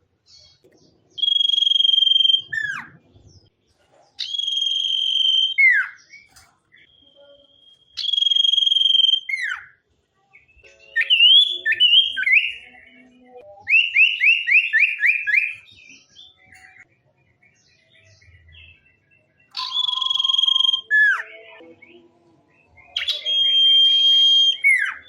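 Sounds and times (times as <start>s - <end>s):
songbird whistling: 1.1s - 3.0s, 4.2s - 9.8s, 10.8s - 12.8s, 13.6s - 16.8s, 19.5s - 21.3s, 22.8s - 25.0s.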